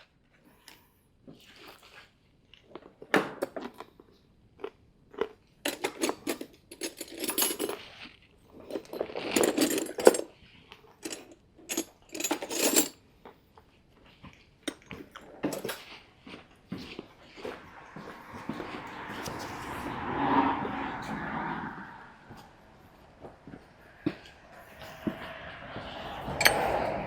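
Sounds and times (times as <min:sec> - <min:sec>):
metal tools clinking and clattering: 0:05.7 - 0:07.8, 0:08.7 - 0:10.3, 0:11.0 - 0:13.0, 0:14.7 - 0:15.9, 0:19.1 - 0:19.7, 0:26.3 - 0:27.0.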